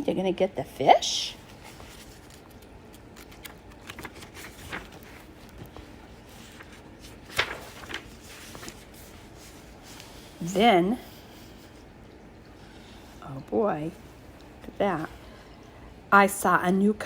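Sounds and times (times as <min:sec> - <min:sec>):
faint handling taps and rustles: 0:01.5 - 0:10.1.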